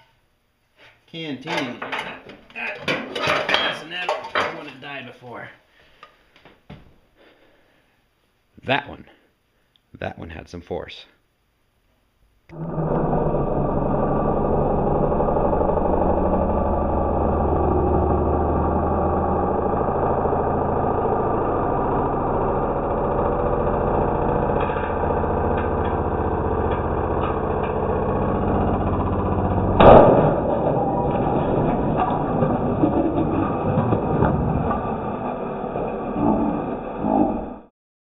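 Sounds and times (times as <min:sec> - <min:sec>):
electric motor whirring: 0:12.5 - 0:32.6
loud bang: 0:16.8 - 0:37.1.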